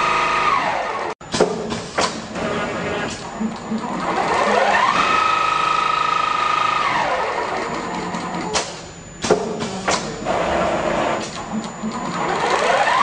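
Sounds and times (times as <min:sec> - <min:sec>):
sewing machine motor whining: 0:02.8 - 0:08.5, 0:11.8 - 0:13.0
sharp mechanical clacks: 0:03.1 - 0:10.2.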